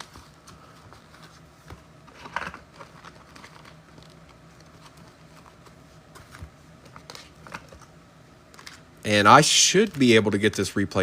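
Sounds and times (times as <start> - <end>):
packaging rustle: 2.1 - 7.8.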